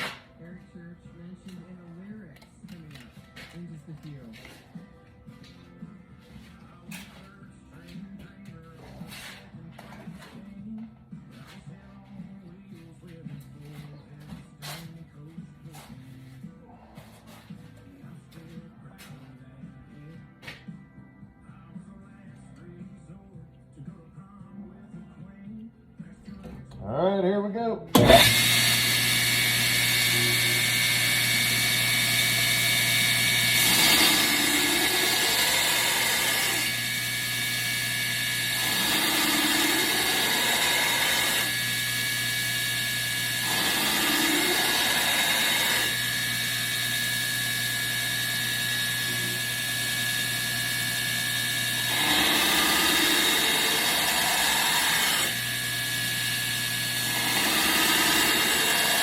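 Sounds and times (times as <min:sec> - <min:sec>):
belt grinder grinding knife blade: 0:28.0 - 0:59.0.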